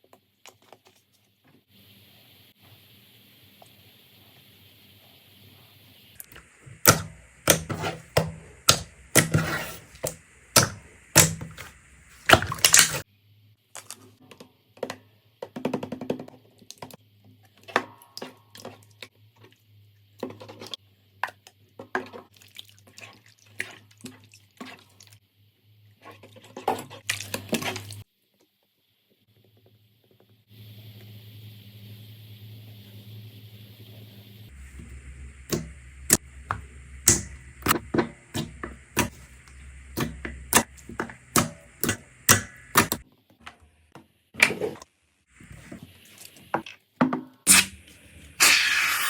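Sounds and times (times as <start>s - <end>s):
slime squelching and popping: 6.2s - 13.0s.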